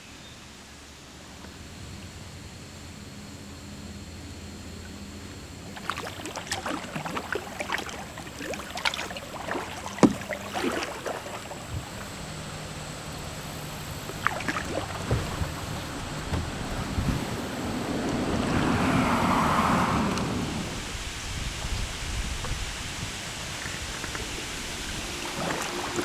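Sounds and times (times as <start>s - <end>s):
paddle splashing water: 4.8s - 26.0s
paddle clicks: 5.8s - 12.0s, 14.0s - 18.4s.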